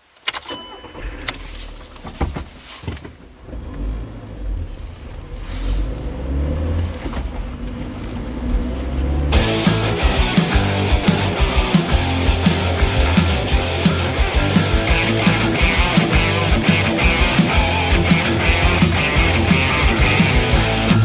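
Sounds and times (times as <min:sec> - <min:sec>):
car engine rumbling: 0:03.2 - 0:21.0
drum hits: 0:09.3 - 0:21.0
rock band playing: 0:09.3 - 0:21.0.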